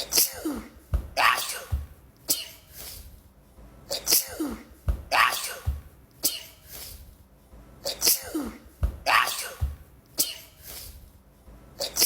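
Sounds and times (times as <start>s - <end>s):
woman sneezing: 0.0s - 3.0s, 3.9s - 7.0s, 7.8s - 11.0s.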